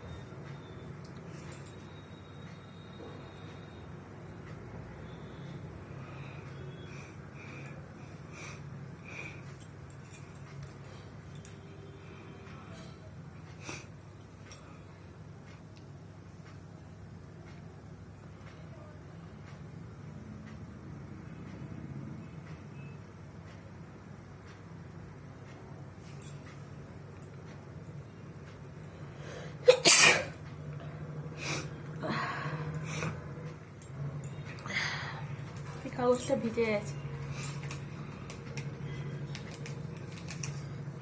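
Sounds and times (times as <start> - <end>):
steady low hum: 0.0 - 41.0
quiet breathing: 5.4 - 9.7, 34.6 - 35.8
person sneezing loudly: 29.6 - 30.3.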